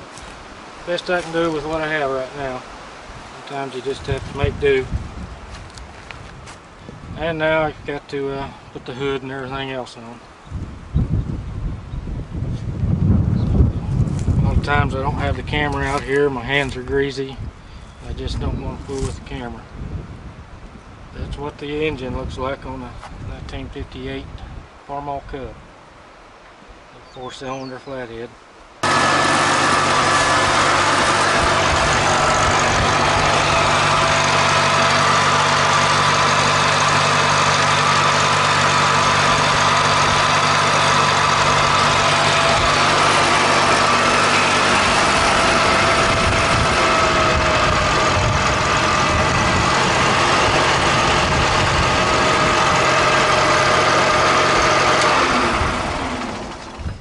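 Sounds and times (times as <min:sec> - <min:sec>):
tractor engine running: 0:28.8 - 0:57.0.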